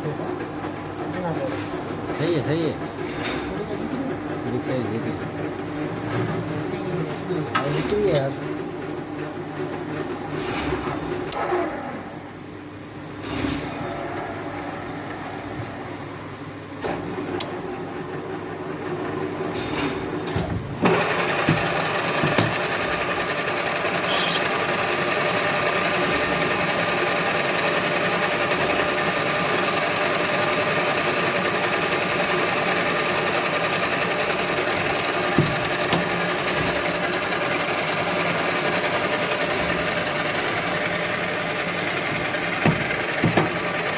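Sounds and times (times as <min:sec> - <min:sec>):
lathe humming: 0:20.9 - 0:43.9
lathe whining tones: 0:20.9 - 0:43.9.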